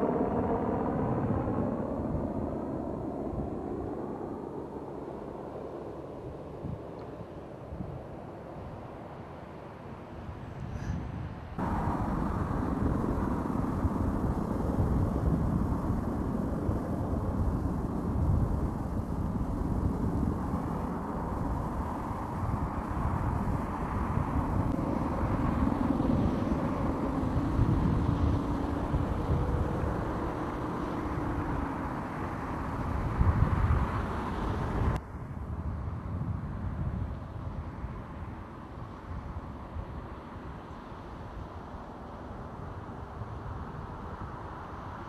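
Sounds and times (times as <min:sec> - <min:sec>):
helicopter rotor rumble: 0:00.0 - 0:09.2, 0:11.6 - 0:35.0.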